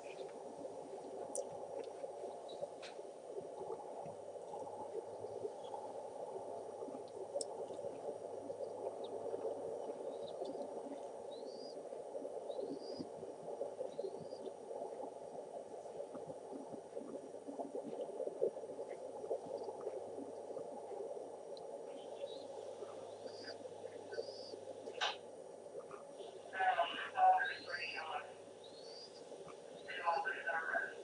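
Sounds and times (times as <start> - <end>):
rising bird chirps: 28.6 - 30.0.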